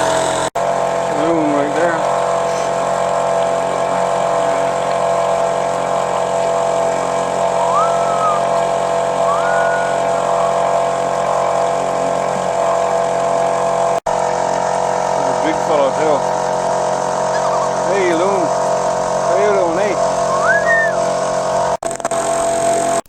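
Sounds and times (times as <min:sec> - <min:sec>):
outboard motor running: 0:00.0 - 0:23.0
short rising whistles: 0:07.5 - 0:08.6, 0:09.2 - 0:11.0, 0:17.3 - 0:17.8, 0:20.3 - 0:21.1.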